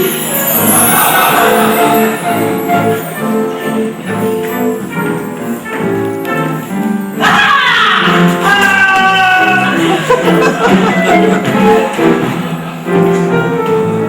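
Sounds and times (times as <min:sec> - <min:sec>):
person singing with accompaniment: 0:00.0 - 0:04.6.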